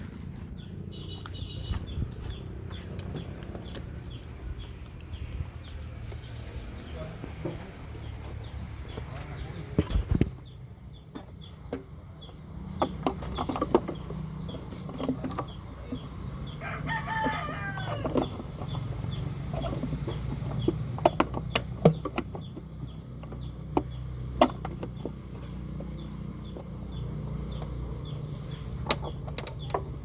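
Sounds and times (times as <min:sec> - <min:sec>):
rooster crowing: 0:16.6 - 0:18.2
sharp clicks and knocks: 0:19.6 - 0:30.0.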